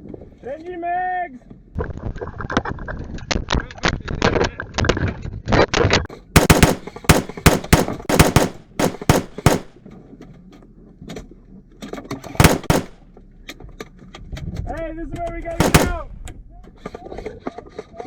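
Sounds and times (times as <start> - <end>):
airsoft guns firing bursts: 6.4 - 9.7, 12.4 - 13.0, 15.6 - 16.0.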